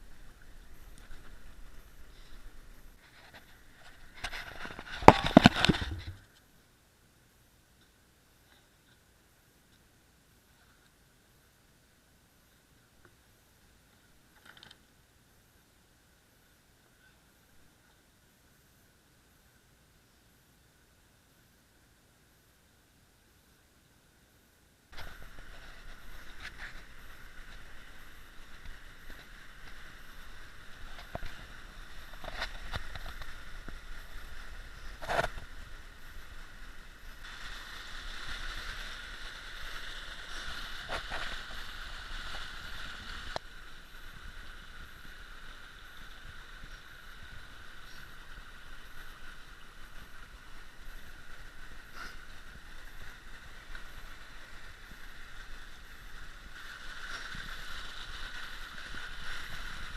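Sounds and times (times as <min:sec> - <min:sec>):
creek water burbling over rocks: 0:25.0 - 0:59.9.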